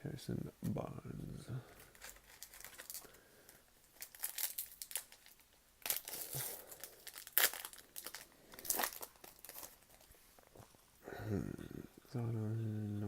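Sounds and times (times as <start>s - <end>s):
card pack wrapper crinkling and tearing: 1.7s - 10.2s.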